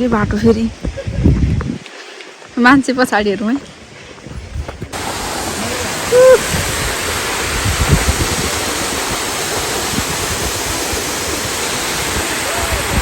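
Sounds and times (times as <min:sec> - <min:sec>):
waterfall rushing: 0:04.9 - 0:13.0
rising and falling call: 0:05.7 - 0:06.6.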